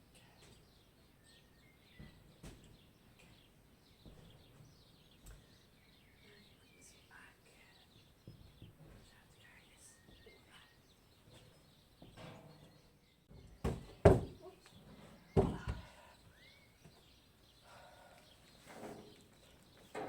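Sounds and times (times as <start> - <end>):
faint bird chirps: 0.0 - 20.0
sharp knocks: 13.3 - 14.4, 15.4 - 15.9.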